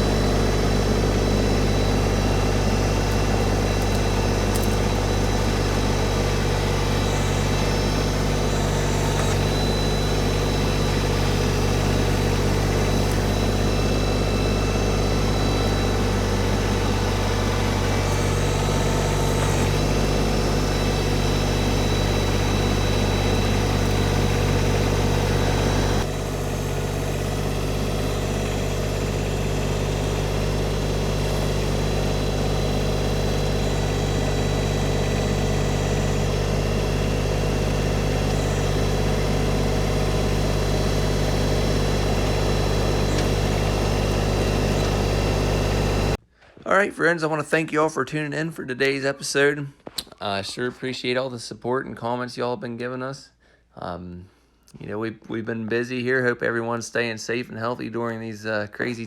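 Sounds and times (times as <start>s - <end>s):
tractor engine droning: 0.0s - 46.2s.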